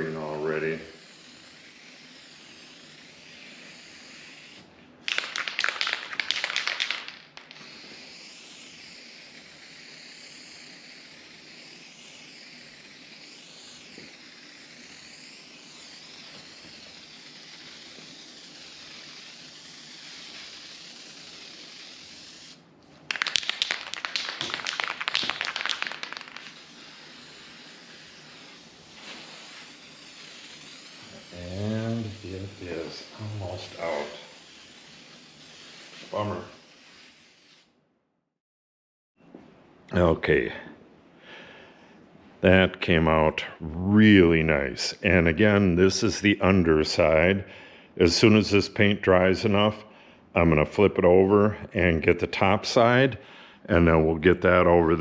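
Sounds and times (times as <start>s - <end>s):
spray paint can hissing: 0.0s - 37.7s.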